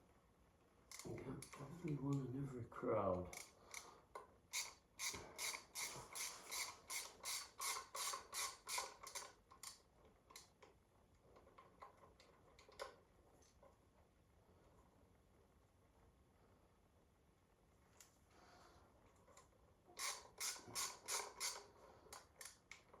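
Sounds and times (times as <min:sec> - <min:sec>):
ratchet wrench clicking: 0:03.3 - 0:03.9, 0:04.5 - 0:09.8, 0:20.0 - 0:22.8.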